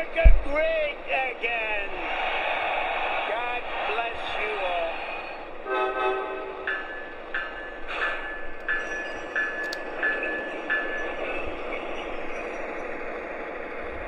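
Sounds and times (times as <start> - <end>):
model train running rumble: 0.0 - 14.0
model train bell ringing: 6.6 - 13.7.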